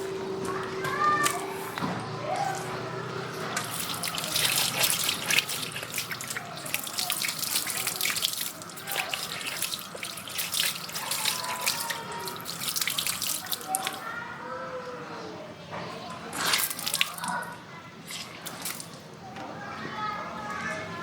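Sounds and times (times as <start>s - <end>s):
water splashing: 3.3s - 14.1s, 16.3s - 19.0s.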